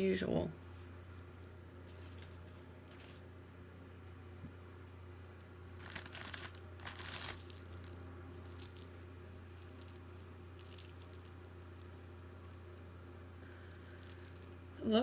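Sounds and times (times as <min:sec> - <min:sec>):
steady low hum: 0:00.0 - 0:15.0
jewelry rustling and clinking: 0:05.8 - 0:15.0.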